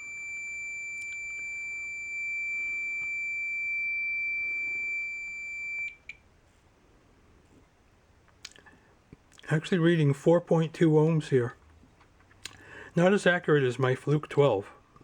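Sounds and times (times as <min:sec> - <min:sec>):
multimeter continuity beep: 0:00.0 - 0:06.2.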